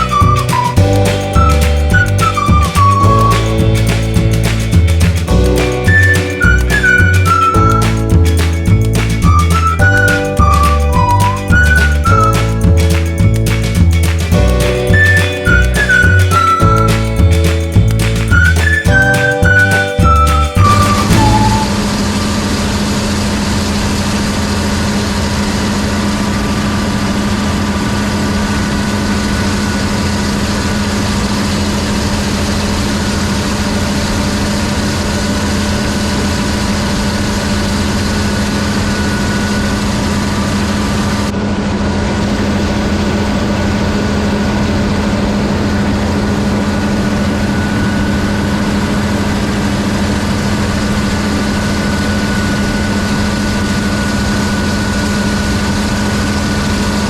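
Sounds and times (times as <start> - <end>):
combine harvester drone: 0.0 - 57.0
faint high whine: 18.7 - 57.0.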